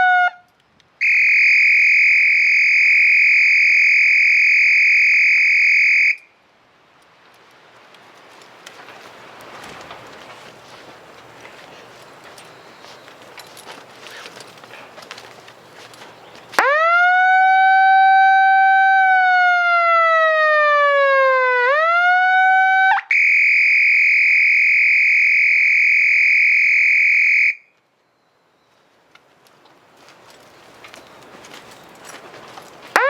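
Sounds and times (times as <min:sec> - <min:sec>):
electronic siren wailing: 0:01.0 - 0:06.2, 0:16.6 - 0:27.6.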